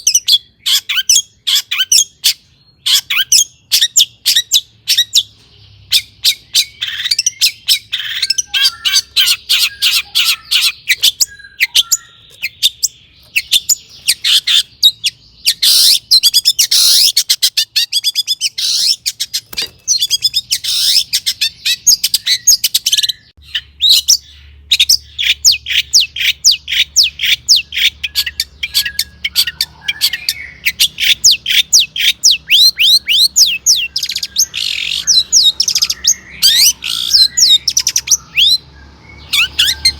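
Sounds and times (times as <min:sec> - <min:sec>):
bird chattering chirps and trills: 0:00.0 - 0:39.9.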